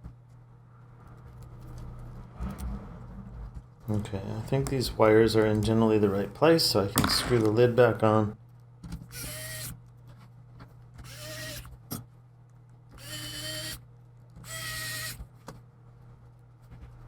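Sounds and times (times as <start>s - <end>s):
electric screwdriver motor whine: 9.1s - 9.7s, 11.0s - 11.7s, 13.0s - 13.8s, 14.4s - 15.2s.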